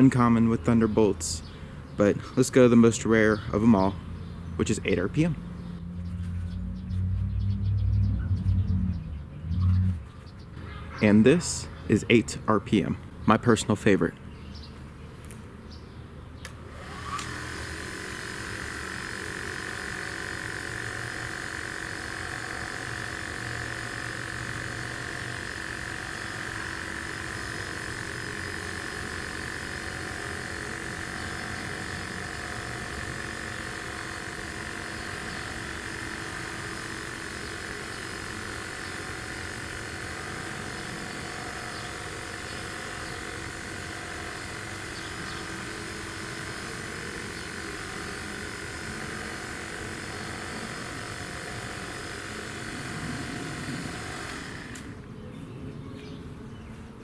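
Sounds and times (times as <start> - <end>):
siren rotator motor humming: 16.4 - 55.2.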